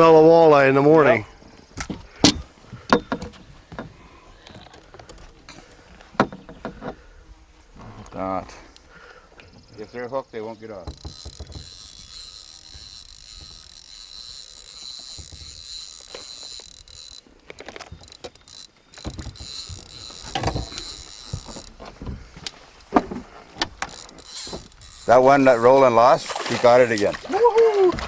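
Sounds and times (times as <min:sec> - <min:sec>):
knocks and clattering in a boat: 0:01.8 - 0:07.0, 0:10.8 - 0:12.0, 0:19.0 - 0:28.0.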